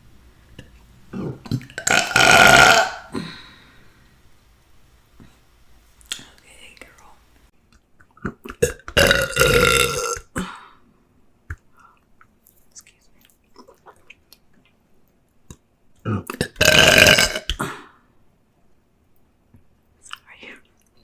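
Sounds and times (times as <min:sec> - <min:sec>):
woman burping: 0:01.1 - 0:03.4, 0:08.6 - 0:10.6, 0:16.1 - 0:18.0
mouth clicks and smacks: 0:06.0 - 0:07.0, 0:07.7 - 0:09.0, 0:11.4 - 0:16.6, 0:19.5 - 0:21.0.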